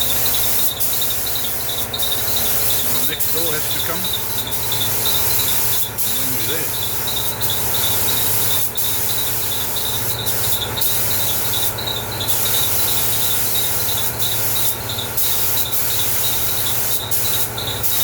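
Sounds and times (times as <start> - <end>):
steady low hum: 0.0 - 11.2
spray gun hissing: 0.0 - 18.0.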